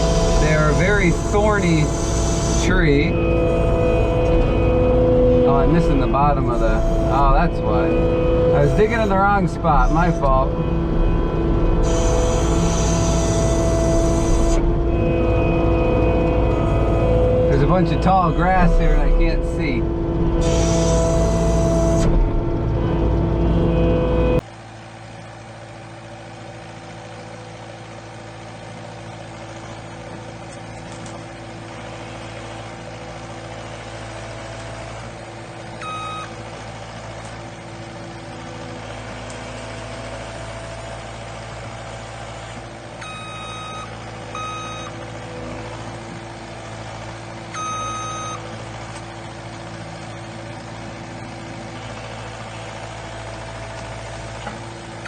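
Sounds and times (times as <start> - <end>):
skid steer engine running: 0.0 - 55.0
backup alarm beeping: 1.8 - 19.6, 35.8 - 36.3, 43.0 - 45.0, 47.6 - 48.4.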